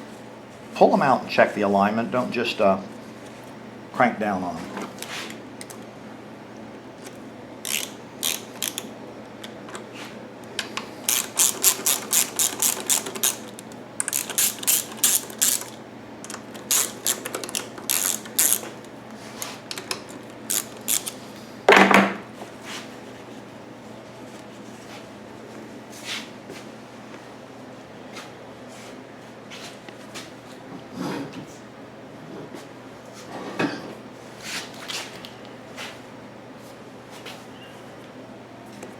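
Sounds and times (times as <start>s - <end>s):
hand ratchet clicking: 7.6s - 9.8s, 10.5s - 21.2s
loud clunk: 21.7s - 22.3s.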